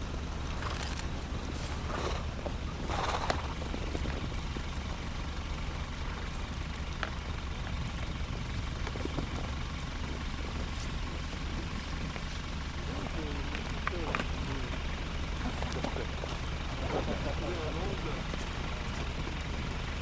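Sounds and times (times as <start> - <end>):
low engine hum: 0.0 - 20.0.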